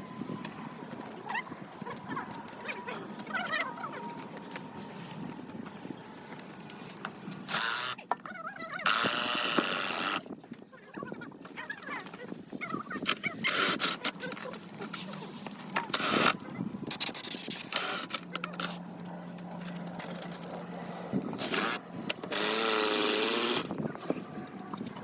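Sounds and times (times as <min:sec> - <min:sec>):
steady low hum: 0:00.0 - 0:10.3, 0:12.4 - 0:25.0.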